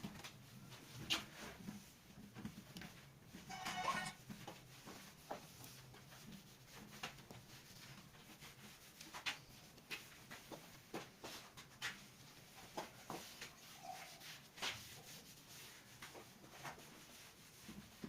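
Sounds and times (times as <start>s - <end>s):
short high-pitched squeak: 3.5s - 4.2s.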